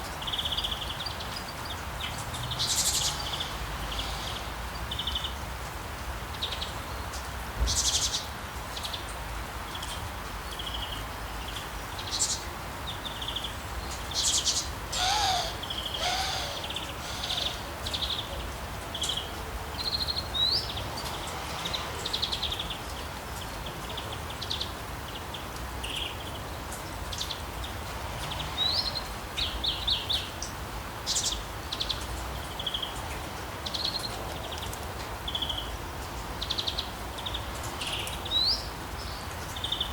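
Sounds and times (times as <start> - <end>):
small birds chirping and trilling: 0.2 - 5.4, 6.3 - 35.8, 36.4 - 39.9
lower bird calls: 14.2 - 18.4.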